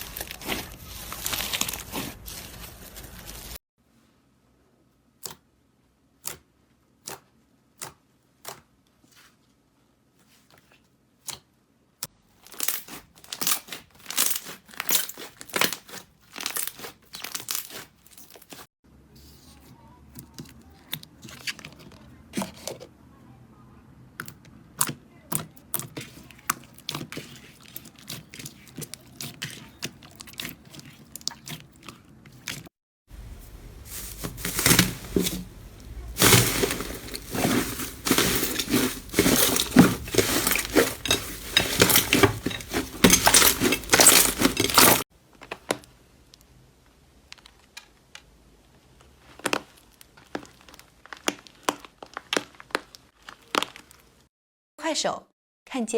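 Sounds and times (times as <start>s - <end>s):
slime crackling and popping: 49.2s - 54.2s.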